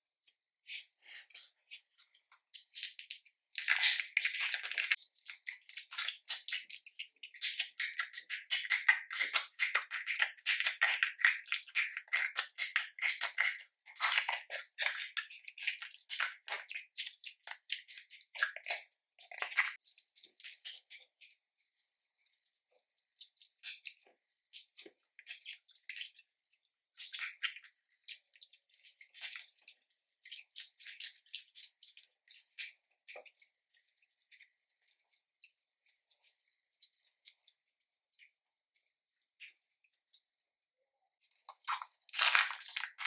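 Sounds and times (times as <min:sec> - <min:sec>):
slime squeezed by hand crackling: 0:41.6 - 0:43.0.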